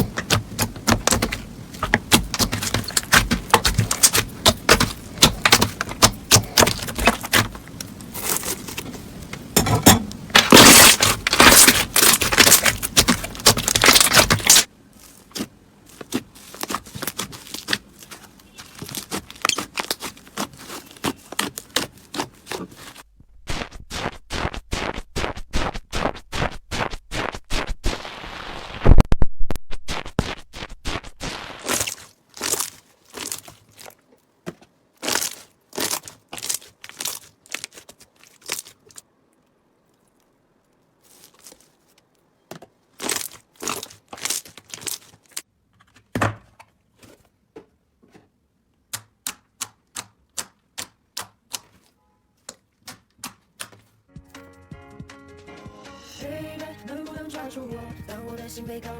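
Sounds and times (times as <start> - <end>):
slime squeezed by hand crackling: 29.8 - 33.9.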